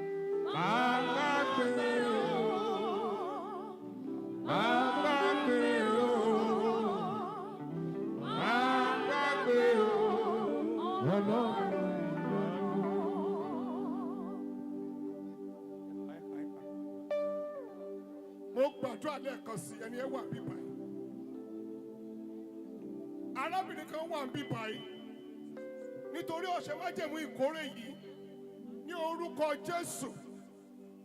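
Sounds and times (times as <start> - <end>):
person singing with vibrato: 0.0 - 16.9
sustained accompanying chords: 0.0 - 31.0.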